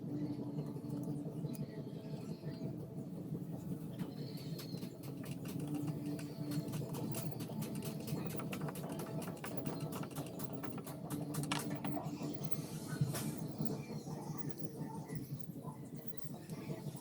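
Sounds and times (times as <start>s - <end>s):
steady low hum: 0.0s - 17.0s
light clicks and taps: 4.0s - 12.6s.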